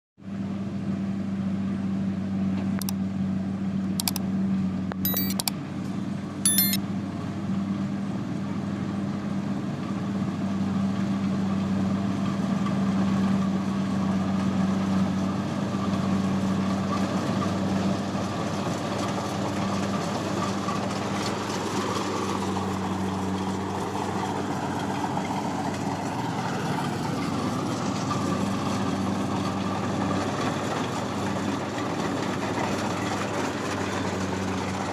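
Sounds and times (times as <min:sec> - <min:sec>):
short sharp clicks: 0:04.0 - 0:04.2, 0:05.0 - 0:05.5, 0:06.5 - 0:06.8.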